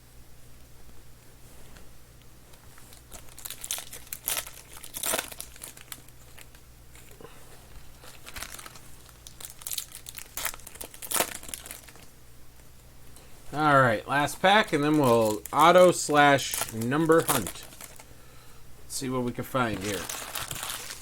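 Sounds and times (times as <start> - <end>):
low steady hum: 0.0 - 21.0
foil wrappers crinkling: 2.5 - 12.2, 13.5 - 18.4, 19.0 - 21.0.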